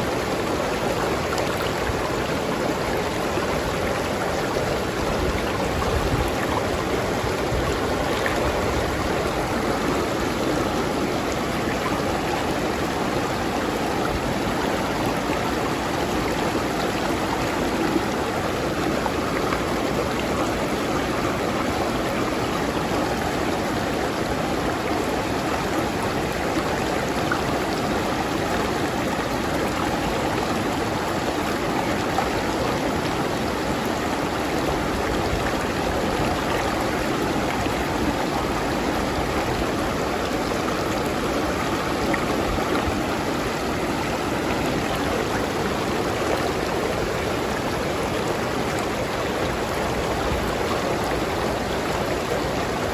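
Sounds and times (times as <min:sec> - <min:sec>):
stream flowing over rocks: 0:00.0 - 0:52.9.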